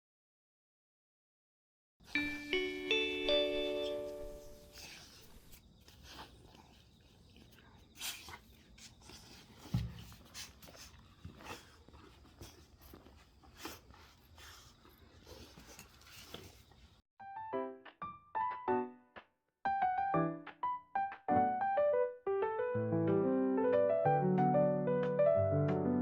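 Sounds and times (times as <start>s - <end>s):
dog chewing bones: 5.9s - 17.0s.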